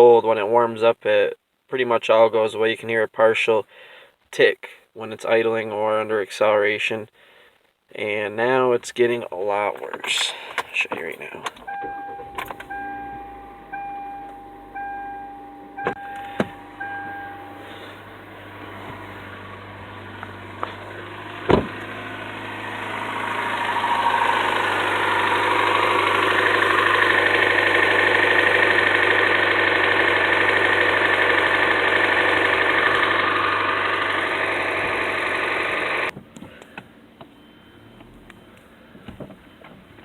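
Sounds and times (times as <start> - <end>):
car engine ticking and knocking: 10.6 - 37.4.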